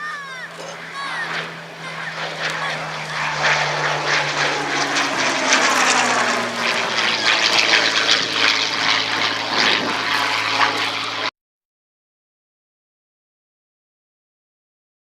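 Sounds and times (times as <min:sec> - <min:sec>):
piston aircraft engine running: 0:00.0 - 0:11.3.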